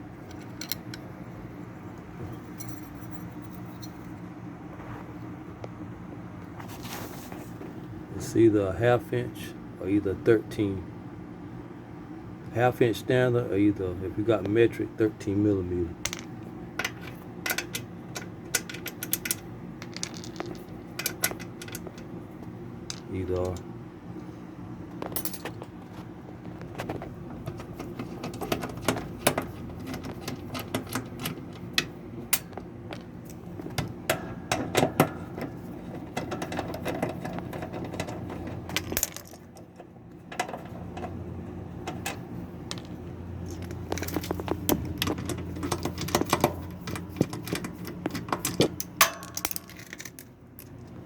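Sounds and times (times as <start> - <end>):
steady low hum: 0.0 - 51.0
metal tools clinking: 43.5 - 50.3.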